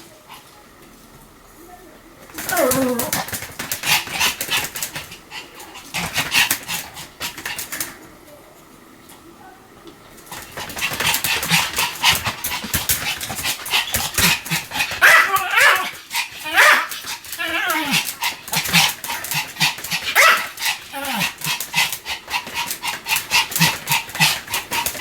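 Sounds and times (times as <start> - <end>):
small dog yapping: 2.4 - 3.3, 13.8 - 21.4.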